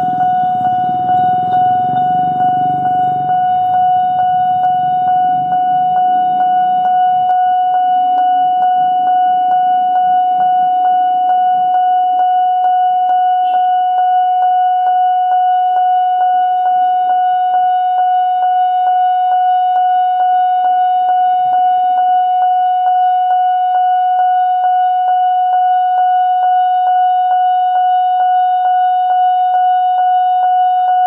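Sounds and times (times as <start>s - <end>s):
level crossing warning siren: 0.0s - 31.0s.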